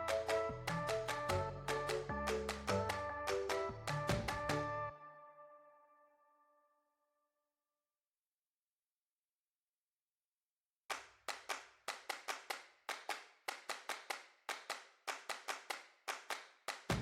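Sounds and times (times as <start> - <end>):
sharp clap-like percussion hits: 0.0 - 4.8, 10.9 - 17.0.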